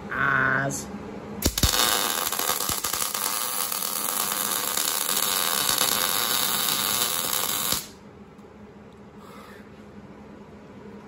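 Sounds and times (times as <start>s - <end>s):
welder arc hissing: 1.4s - 8.0s.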